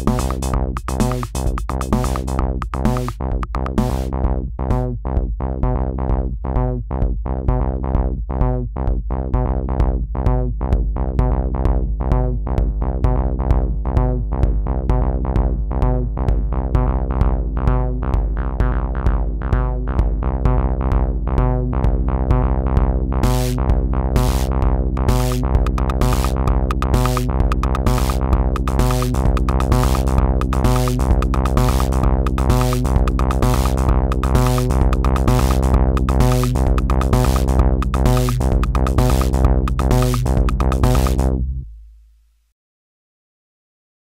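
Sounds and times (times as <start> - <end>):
clicky drum machine hits: 0.0 - 4.1, 25.1 - 41.2
repeated synth notes: 0.0 - 4.1, 24.2 - 41.4
steady low synth bass: 0.0 - 41.8.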